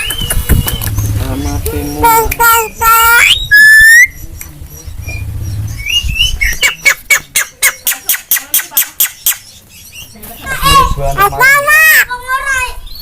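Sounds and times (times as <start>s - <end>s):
myna calling: 0.3s - 4.2s.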